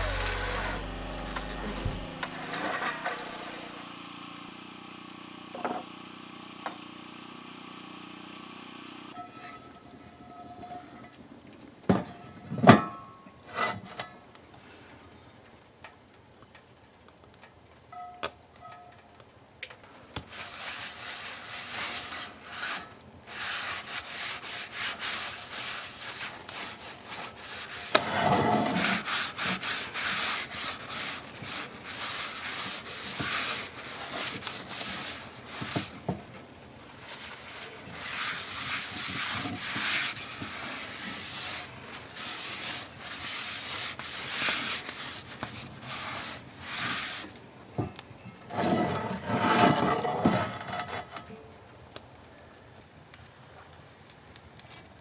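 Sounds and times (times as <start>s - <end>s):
tool rasping on wood: 21.8s - 36.0s, 38.0s - 47.2s.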